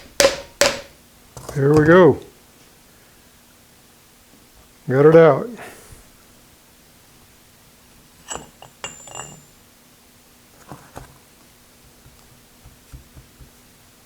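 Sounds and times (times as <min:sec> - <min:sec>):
metal parts clinking: 0:08.2 - 0:09.6.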